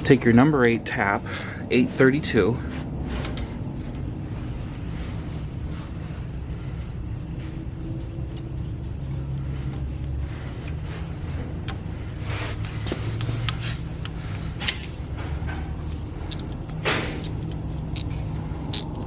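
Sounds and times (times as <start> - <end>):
steady low hum: 0.0 - 19.0
metallic clicks of tap threading: 16.2 - 19.0.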